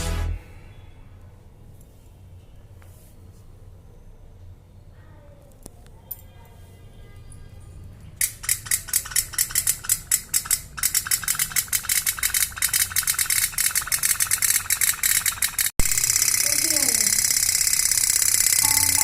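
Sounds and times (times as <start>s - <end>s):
toy steam boat engine putter: 8.2s - 19.0s.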